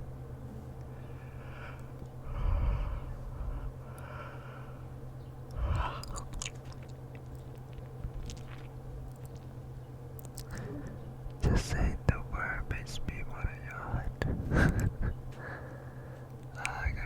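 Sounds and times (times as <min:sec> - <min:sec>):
person breathing: 0:00.9 - 0:06.2, 0:14.4 - 0:17.0
soft mouth clicks: 0:05.4 - 0:09.5, 0:10.1 - 0:11.0, 0:16.4 - 0:16.9.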